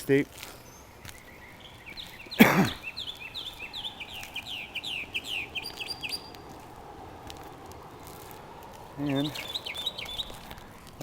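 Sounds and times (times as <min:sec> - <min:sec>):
songbird whistling: 0:00.6 - 0:06.8, 0:09.0 - 0:10.7.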